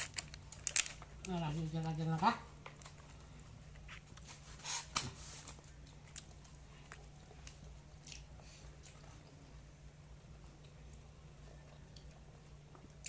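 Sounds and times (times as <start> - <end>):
steady low hum: 0.0 - 13.0
soft chewing: 5.5 - 13.0.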